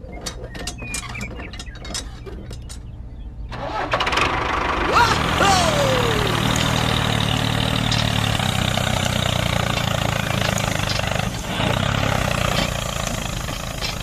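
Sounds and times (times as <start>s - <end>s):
small engine idling: 3.5s - 14.0s.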